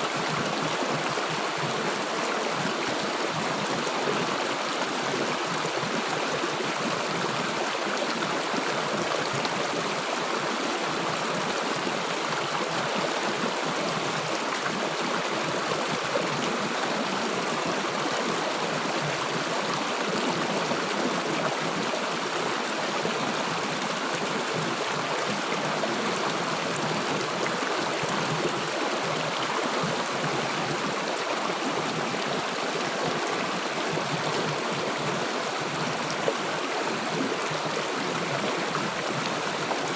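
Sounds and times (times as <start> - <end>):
water rushing over rocks: 0.0 - 39.9.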